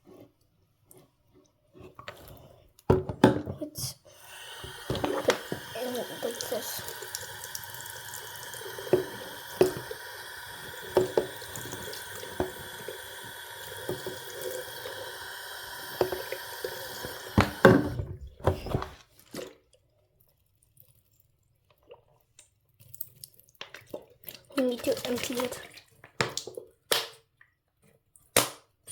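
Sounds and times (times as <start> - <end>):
water running from tap: 3.8 - 18.2, 24.4 - 25.8.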